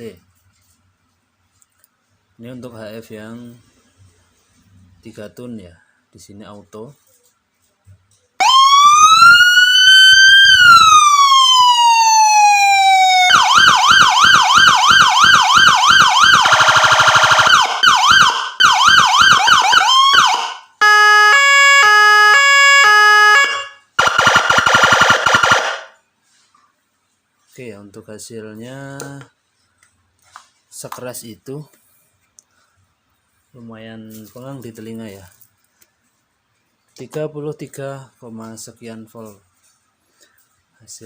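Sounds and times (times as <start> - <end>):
electronic siren through horn speaker: 8.4 - 26.0.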